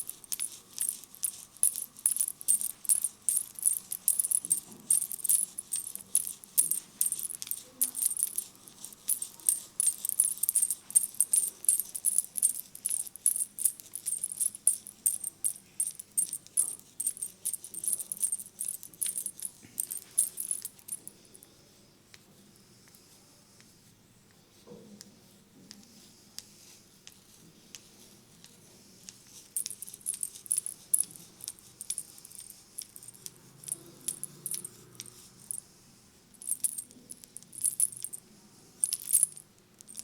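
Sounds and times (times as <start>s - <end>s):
head massage rattling and clicking: 0.0s - 21.1s, 29.2s - 35.6s, 38.8s - 40.0s.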